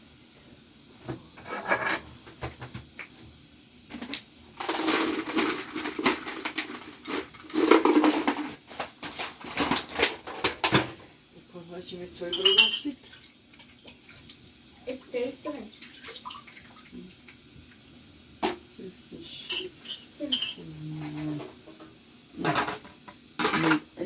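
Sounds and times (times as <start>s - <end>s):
utensils clattering on dishes: 1.4s - 2.1s, 4.0s - 10.9s, 12.3s - 13.0s, 19.3s - 21.8s, 22.4s - 23.9s.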